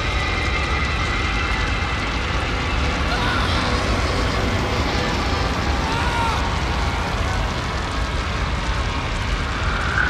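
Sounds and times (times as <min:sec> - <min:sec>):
dense crackling hiss: 0:00.0 - 0:10.0
low rumble: 0:06.5 - 0:10.0.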